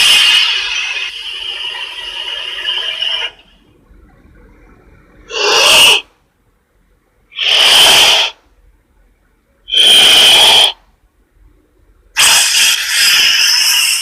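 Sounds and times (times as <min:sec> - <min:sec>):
snake hissing: 0:00.0 - 0:03.5, 0:05.3 - 0:06.0, 0:07.4 - 0:08.4, 0:09.7 - 0:10.8, 0:12.2 - 0:14.0.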